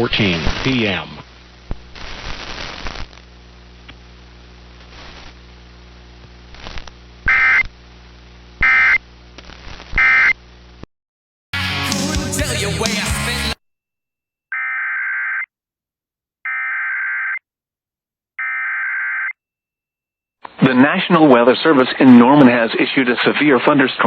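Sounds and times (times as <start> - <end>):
receiver static with low buzz: 0.0 - 10.9.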